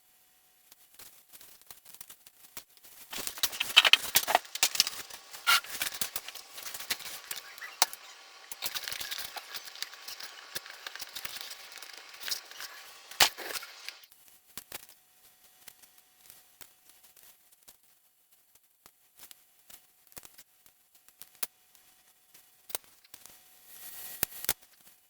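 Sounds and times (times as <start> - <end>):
hands handling foam model parts: 3.1 - 14.0.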